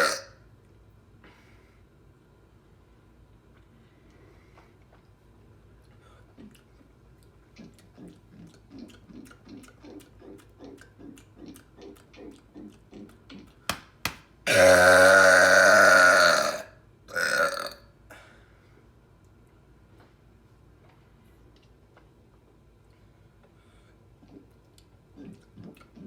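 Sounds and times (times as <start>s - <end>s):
person gulping soda: 0.0s - 0.3s, 14.5s - 17.8s
loud burp: 0.0s - 0.4s, 14.5s - 17.9s.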